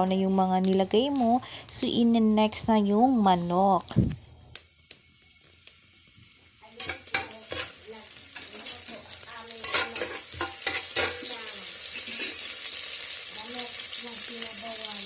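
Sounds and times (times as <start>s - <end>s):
chicken sizzling in hot oil: 0.0s - 3.9s, 4.5s - 15.0s
stirring knocks and clinks in pot: 6.8s - 7.8s, 9.6s - 12.5s.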